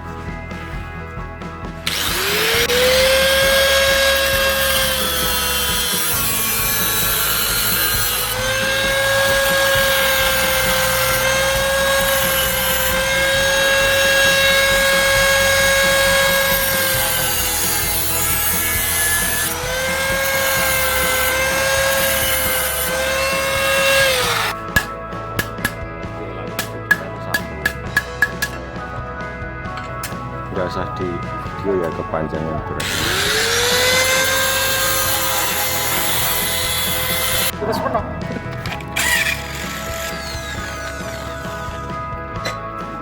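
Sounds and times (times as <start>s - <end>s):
grinder whining and grinding: 1.7s - 25.6s, 32.8s - 37.6s, 38.2s - 43.0s.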